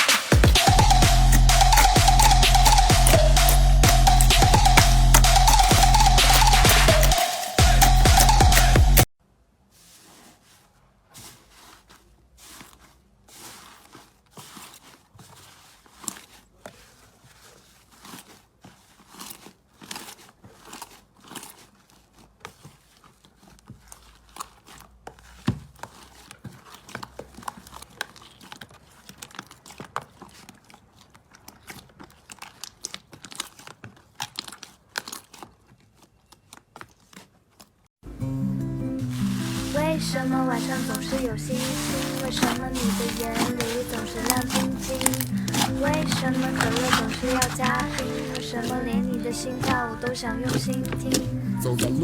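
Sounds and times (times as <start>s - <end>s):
slime squeezed by hand crackling: 0.0s - 9.1s, 39.0s - 52.0s.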